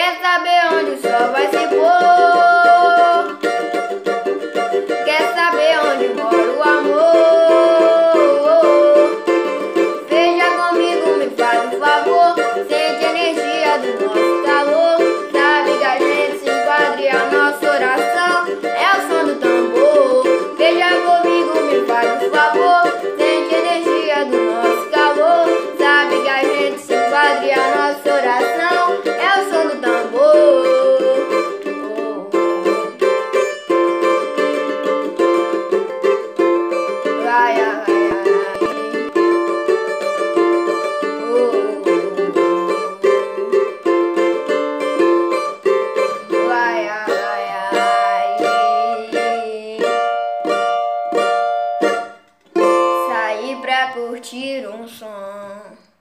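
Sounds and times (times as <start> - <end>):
person singing: 0.0 - 51.2, 51.8 - 56.0
strummed acoustic string instrument: 0.0 - 55.0.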